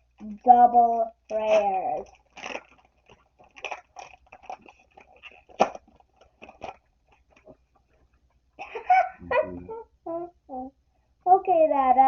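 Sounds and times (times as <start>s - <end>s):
foil pack crinkling: 0.5s - 7.6s.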